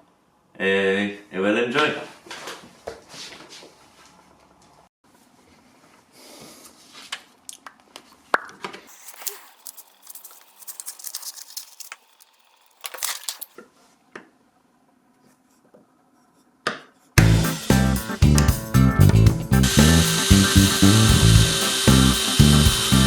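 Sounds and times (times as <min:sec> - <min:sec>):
material rustling and crinkling: 0:06.7 - 0:14.1.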